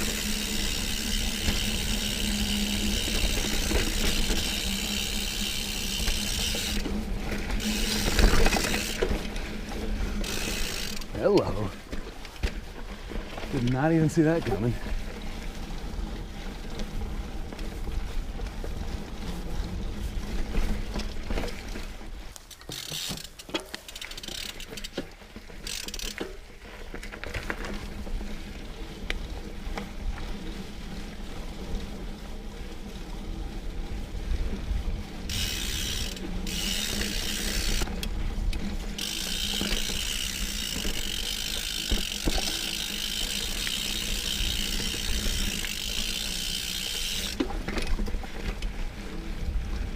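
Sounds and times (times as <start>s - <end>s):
bike hub ratchet clicking: 0.0s - 9.3s, 10.1s - 11.5s, 22.4s - 26.4s, 35.3s - 47.5s
bike chain and frame rattling: 0.0s - 49.9s.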